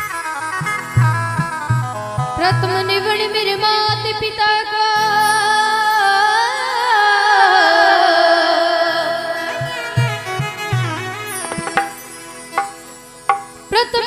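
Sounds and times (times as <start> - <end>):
devotional melody with vibrato: 0.0 - 14.0
drum beat: 11.4 - 12.0, 12.6 - 13.6.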